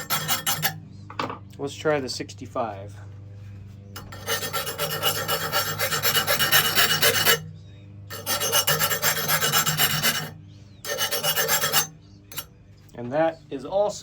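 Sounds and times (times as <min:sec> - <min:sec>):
file scraping on steel blade: 0:00.0 - 0:00.8, 0:04.0 - 0:07.5, 0:08.1 - 0:12.5.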